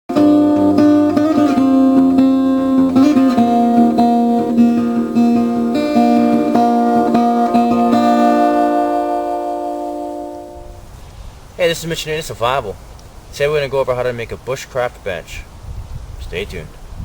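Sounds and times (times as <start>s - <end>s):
acoustic guitar picking: 0.1s - 10.9s.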